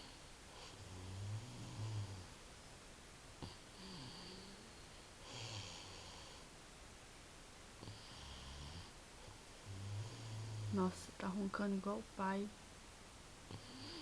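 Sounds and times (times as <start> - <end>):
girl snoring: 0.0 - 2.4, 3.4 - 6.5, 7.8 - 9.0, 9.6 - 11.1, 13.5 - 14.0.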